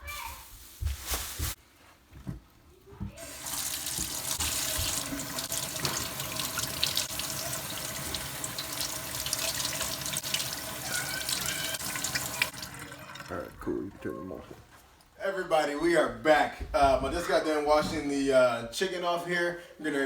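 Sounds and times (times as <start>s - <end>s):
tap water splashing into sink: 3.2s - 13.7s.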